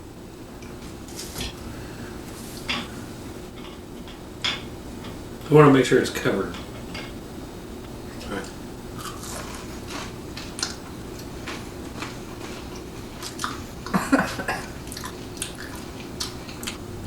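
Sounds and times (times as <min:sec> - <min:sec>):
people chewing food: 0:08.1 - 0:16.9.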